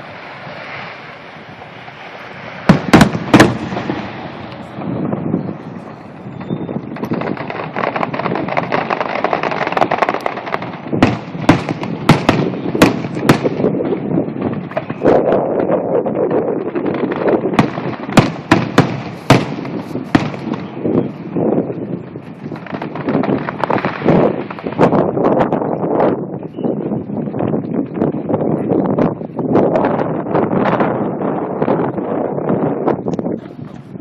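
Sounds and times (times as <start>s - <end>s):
fireworks sharp bangs: 0.0s - 25.2s
fireworks crackling: 0.0s - 26.4s.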